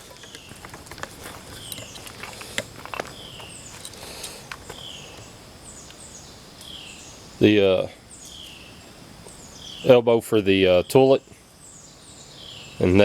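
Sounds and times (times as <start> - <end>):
footsteps on dirt or concrete: 0.0 - 5.3
small clicks and knocks: 0.0 - 5.3
bird calling: 0.0 - 10.0.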